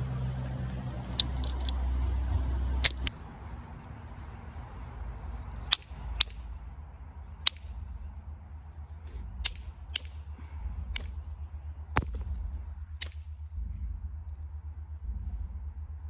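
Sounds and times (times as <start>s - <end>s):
low steady rumble: 0.0s - 16.0s
stone knocking against stone: 11.9s - 13.2s.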